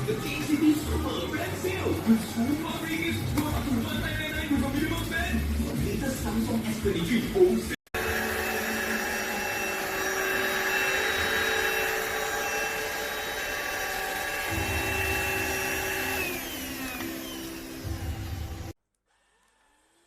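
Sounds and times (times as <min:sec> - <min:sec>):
stick vacuum whirring: 0:07.9 - 0:18.8.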